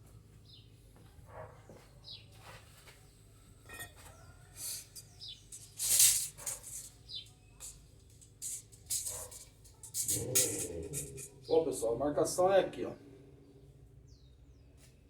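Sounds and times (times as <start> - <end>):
small bird chirping: 4.1 - 11.6
scratchy rustling: 4.6 - 11.4.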